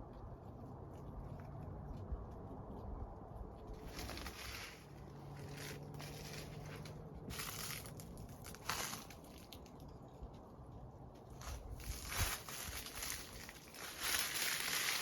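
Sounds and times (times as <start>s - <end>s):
footsteps on gravel: 3.8s - 9.6s, 11.3s - 15.0s.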